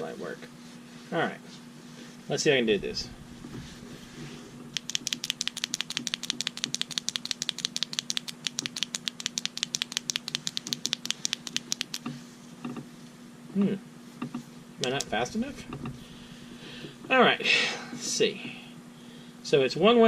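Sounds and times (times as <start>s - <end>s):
rapid flashlight button clicks: 4.7s - 12.0s.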